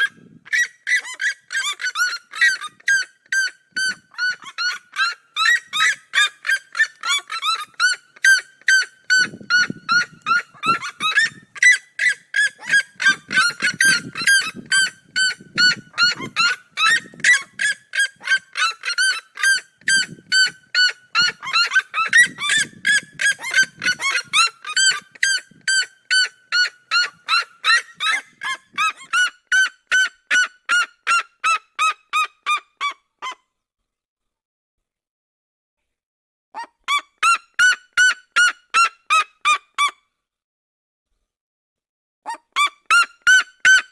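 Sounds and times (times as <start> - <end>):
bird yelping calls: 0.0 - 29.3.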